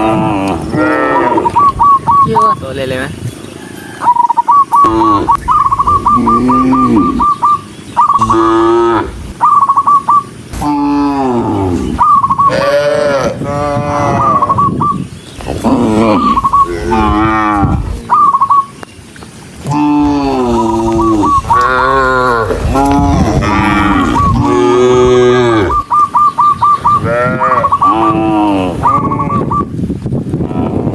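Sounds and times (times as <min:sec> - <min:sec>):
cattle mooing: 0:00.0 - 0:01.6, 0:06.0 - 0:07.4, 0:08.2 - 0:09.2, 0:10.5 - 0:14.6, 0:15.6 - 0:18.0, 0:19.6 - 0:25.8, 0:27.0 - 0:29.6.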